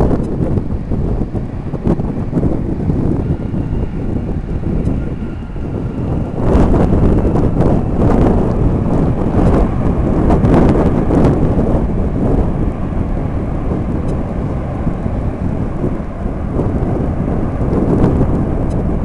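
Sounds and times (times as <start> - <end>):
deep jet engine rumble: 0.0 - 19.0
wind buffeting microphone: 0.0 - 19.0.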